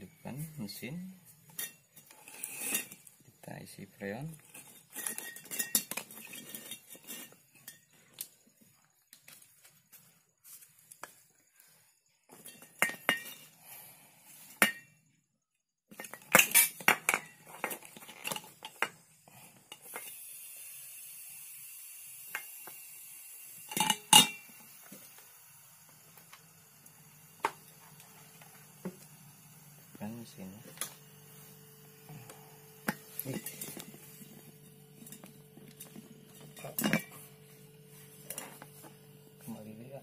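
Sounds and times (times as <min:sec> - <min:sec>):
metal tools clinking: 0:04.3 - 0:08.0, 0:32.9 - 0:37.4
high hiss: 0:18.4 - 0:35.2.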